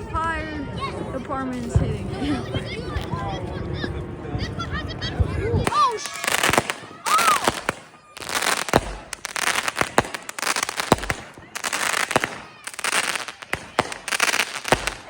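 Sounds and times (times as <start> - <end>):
fireworks crackling and popping: 5.2 - 15.0
sharp fireworks bangs: 5.2 - 15.0.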